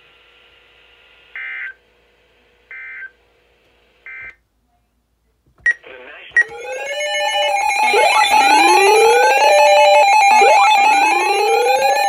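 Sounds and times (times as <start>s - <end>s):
radio hiss and hum: 5.7s - 6.5s
data tone bursts: 6.4s - 12.0s.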